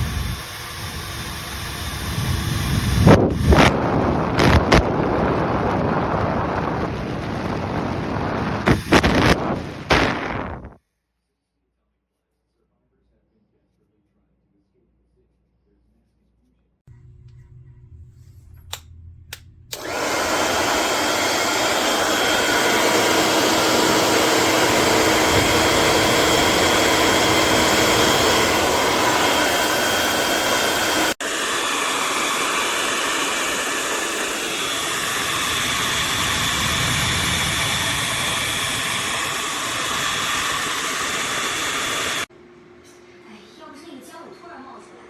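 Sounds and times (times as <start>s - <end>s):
hair dryer blowing air: 0.0s - 10.8s, 16.9s - 42.3s
switch clicks: 18.4s - 19.9s.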